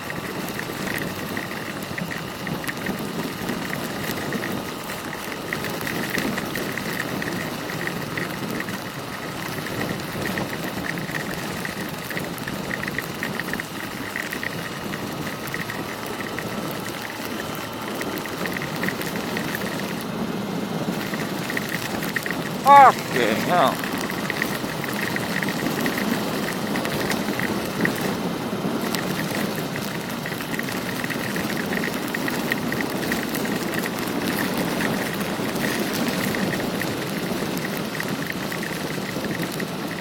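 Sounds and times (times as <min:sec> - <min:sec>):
motorcycle engine running: 0:00.0 - 0:22.7, 0:23.8 - 0:40.0
raindrops ticking on camera: 0:00.0 - 0:40.0
heavy rain: 0:11.2 - 0:40.0.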